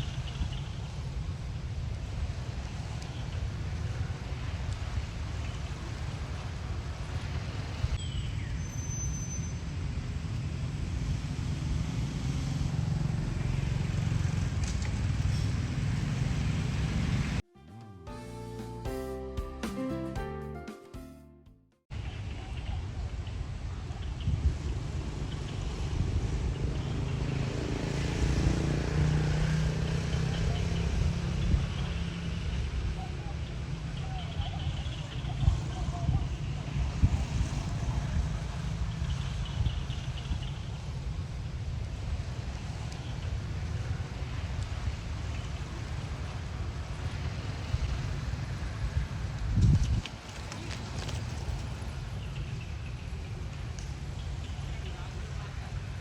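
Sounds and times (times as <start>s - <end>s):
vehicle engine passing by: 24.6s - 32.9s
wind buffeting microphone: 34.7s - 54.2s.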